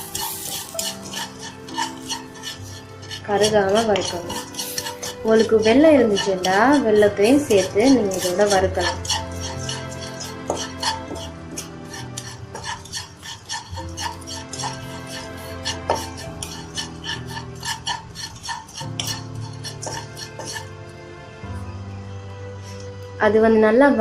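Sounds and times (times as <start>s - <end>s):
spoon scraping in a pan: 0.0s - 20.9s, 22.6s - 23.0s
background music: 0.0s - 24.0s.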